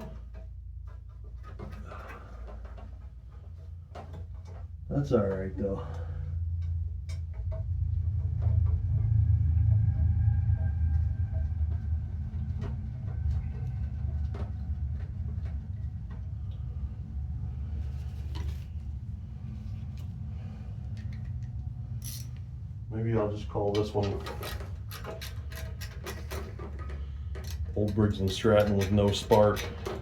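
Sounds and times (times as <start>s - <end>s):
steady low rumble: 0.0s - 30.0s
light clicks and taps: 23.6s - 30.0s.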